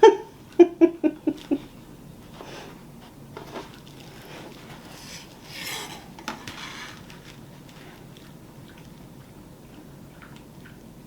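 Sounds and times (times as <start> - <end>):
wreath rustling: 3.4 - 8.1.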